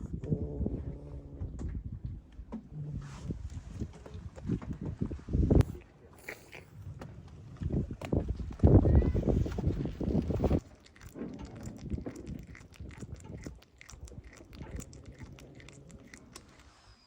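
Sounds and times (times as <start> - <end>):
cat crunching food: 5.6 - 6.8, 9.4 - 16.8.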